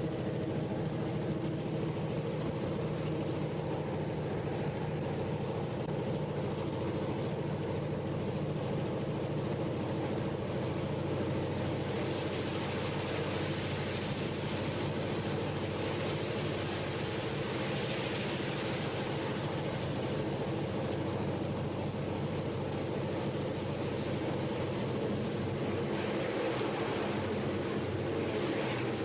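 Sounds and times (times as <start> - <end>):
diesel locomotive at full throttle: 0.0 - 29.0
hiss: 8.3 - 22.0, 22.6 - 29.0.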